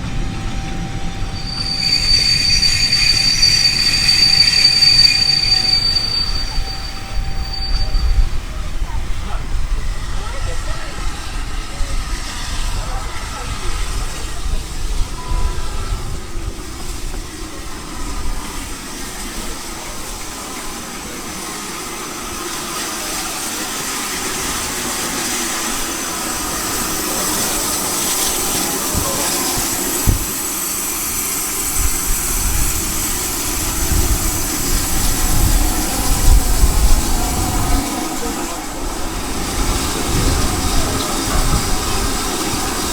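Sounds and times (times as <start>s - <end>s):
high rail hiss: 0.0s - 42.9s
train rumble: 0.0s - 42.9s.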